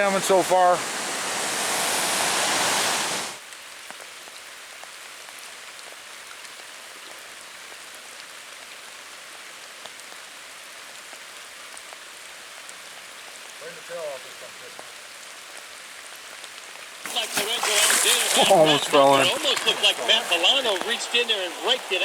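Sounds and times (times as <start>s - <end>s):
waterfall rushing: 0.0s - 3.4s, 17.0s - 22.0s
rain pattering: 0.0s - 22.0s.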